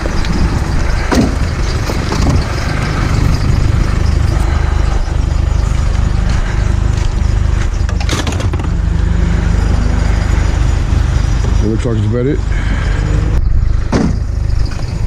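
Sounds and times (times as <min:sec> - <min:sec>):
sharp clatter: 0:00.0 - 0:11.8
vehicle engine rumbling: 0:00.0 - 0:15.0.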